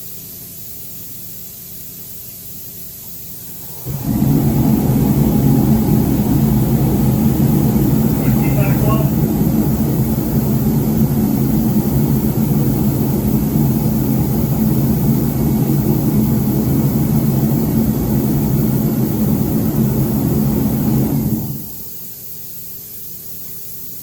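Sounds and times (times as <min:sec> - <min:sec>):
motor droning: 0:03.6 - 0:21.9.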